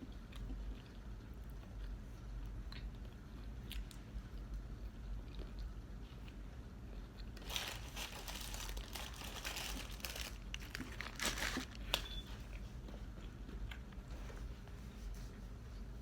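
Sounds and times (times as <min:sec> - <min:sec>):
sharp paper crackles: 0:07.4 - 0:12.0
paper packaging rustling: 0:07.4 - 0:12.1.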